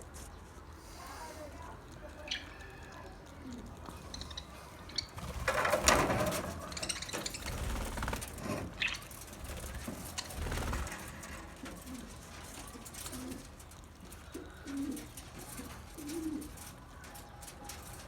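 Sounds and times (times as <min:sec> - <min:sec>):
budgerigars chattering: 0:03.9 - 0:10.7.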